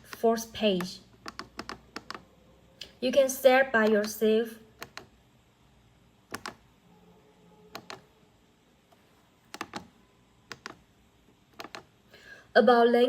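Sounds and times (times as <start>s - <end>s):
keypad button clicks: 0.8s - 2.2s, 4.8s - 5.1s, 6.3s - 6.6s, 7.7s - 8.1s, 9.5s - 9.9s, 10.5s - 10.8s, 11.6s - 11.9s.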